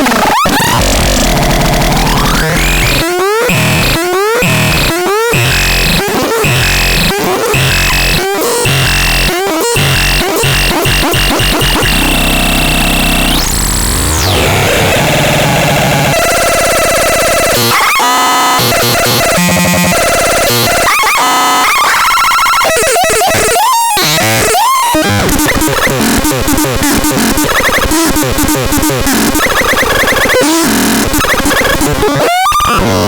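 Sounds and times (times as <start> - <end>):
harsh synthesizer tones: 0.0 - 33.0.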